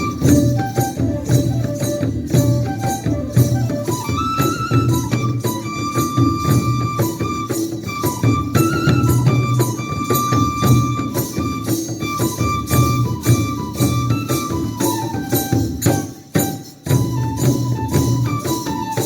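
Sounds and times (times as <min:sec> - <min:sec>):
drum and percussion beat: 0:00.0 - 0:19.0.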